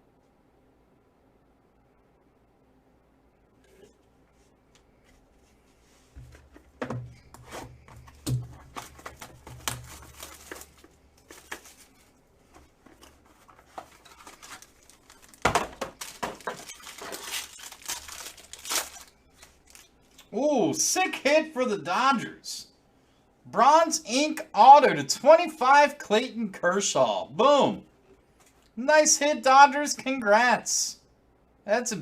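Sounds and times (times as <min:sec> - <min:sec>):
card packaging tearing and crinkling: 0:07.4 - 0:12.1, 0:12.9 - 0:19.9.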